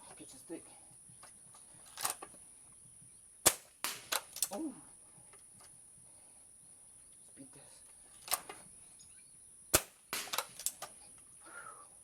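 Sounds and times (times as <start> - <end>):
air rifle shot: 3.4 - 4.4, 9.7 - 10.8.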